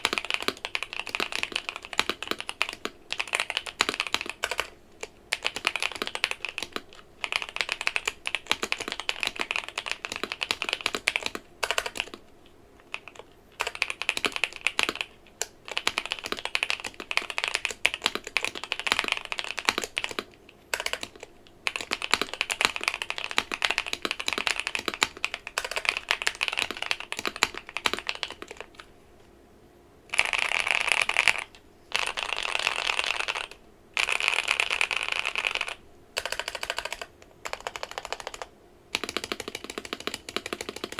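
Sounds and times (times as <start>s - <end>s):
mechanical keyboard typing: 0.0s - 12.2s, 12.8s - 28.9s, 30.1s - 40.9s.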